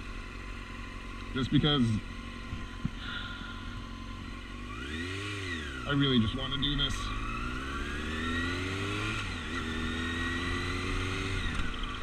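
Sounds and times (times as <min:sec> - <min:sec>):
motorcycle engine accelerating: 0:00.0 - 0:12.0.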